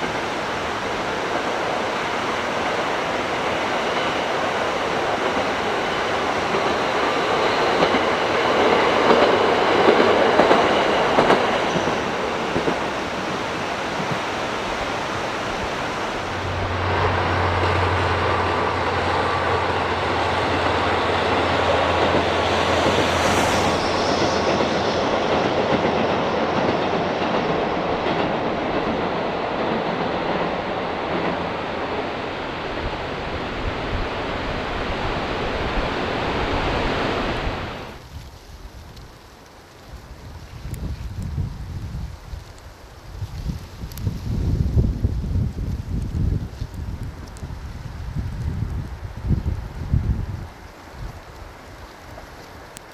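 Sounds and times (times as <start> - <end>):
diesel train passing: 0.0 - 38.1.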